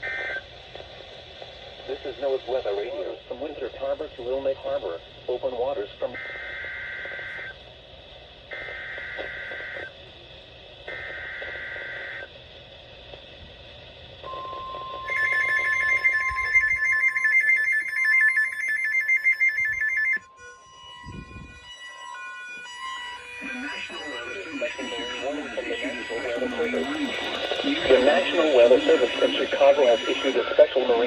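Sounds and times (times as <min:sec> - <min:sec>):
steady warning alarm tone: 0:00.0 - 0:10.1, 0:10.8 - 0:12.4, 0:14.2 - 0:31.0
rapidly pulsing electronic alarm: 0:00.0 - 0:13.0, 0:14.2 - 0:31.0
screeching digital data tones: 0:14.3 - 0:31.0.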